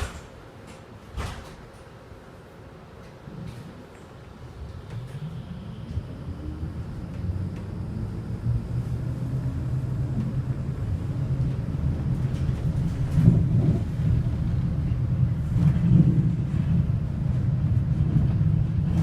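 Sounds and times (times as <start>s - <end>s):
bus engine and road rumble: 0.0s - 19.0s
bus jolts: 4.4s - 19.0s.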